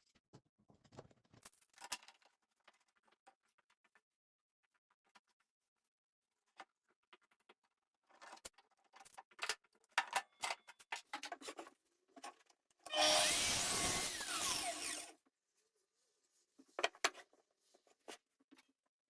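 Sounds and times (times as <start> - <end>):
power tool running: 12.9 - 15.1.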